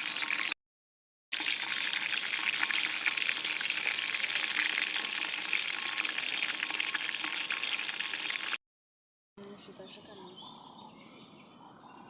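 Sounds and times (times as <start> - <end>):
food deep-frying in oil: 0.0 - 0.6, 1.3 - 8.6.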